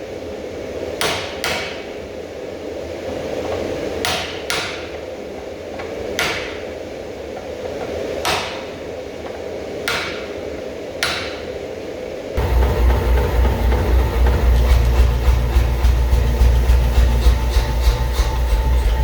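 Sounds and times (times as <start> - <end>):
hammer ringing on anvil: 12.4 - 19.0
low pulsing machine: 12.4 - 19.0
steady hum: 12.4 - 19.0.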